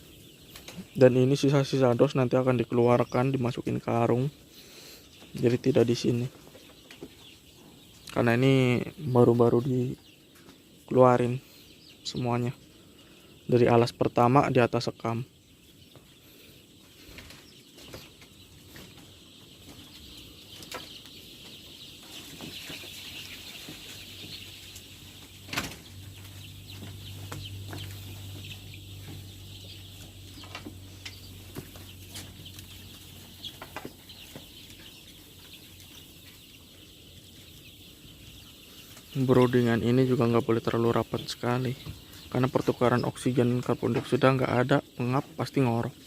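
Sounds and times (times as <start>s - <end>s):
chicks peeping: 0.0s - 46.0s.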